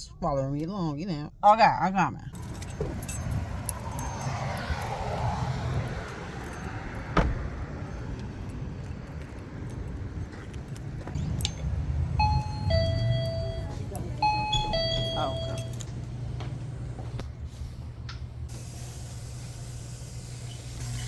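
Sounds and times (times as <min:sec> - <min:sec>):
low traffic rumble: 0:02.2 - 0:21.0
vehicle passing whoosh: 0:02.4 - 0:14.9
electronic door chime: 0:12.2 - 0:15.8.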